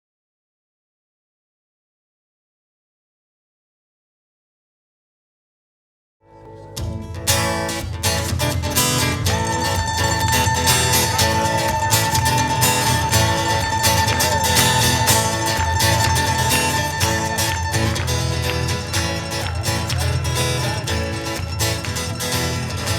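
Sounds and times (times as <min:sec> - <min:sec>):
steady bass: 0:06.4 - 0:22.9
ukulele plucked strings: 0:06.4 - 0:22.9.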